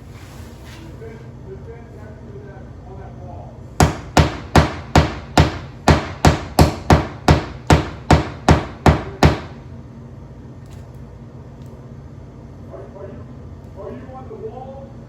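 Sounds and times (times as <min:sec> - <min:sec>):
pounding on a wall: 0:03.8 - 0:09.6.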